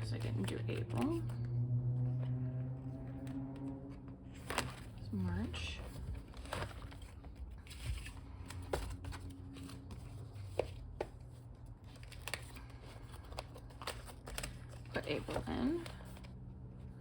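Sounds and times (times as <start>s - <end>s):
paper rustling: 4.3s - 17.0s.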